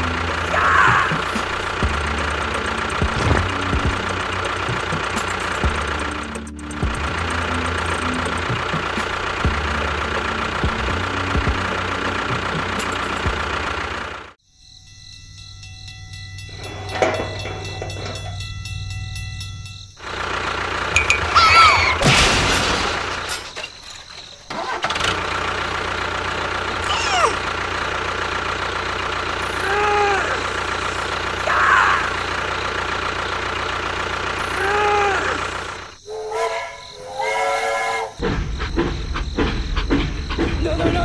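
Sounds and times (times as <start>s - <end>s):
engine running: 0.0s - 14.4s, 16.4s - 41.0s
held horn-like tone: 36.0s - 38.2s
short chirping tones: 36.0s - 38.2s.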